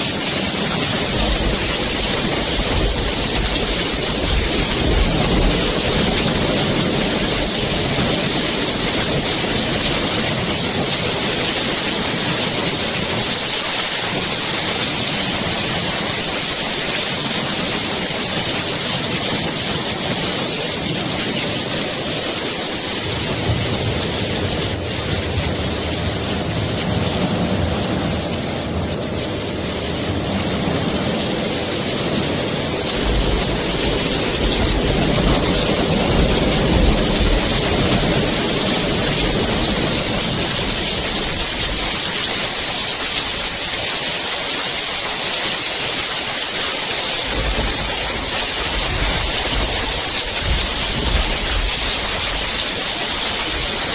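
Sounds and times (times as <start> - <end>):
low rumble of thunder: 0.0 - 43.2, 47.2 - 53.9
heavy rain hissing: 0.0 - 53.9.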